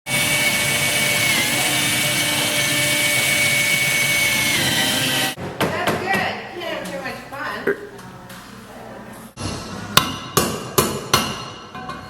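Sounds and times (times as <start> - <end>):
power tool whining: 0.1 - 5.4.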